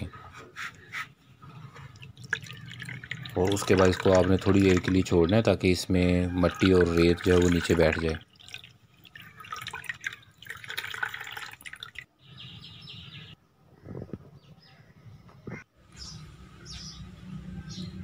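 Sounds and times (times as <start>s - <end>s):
juice dripping and trickling: 1.4s - 5.6s, 6.3s - 12.1s.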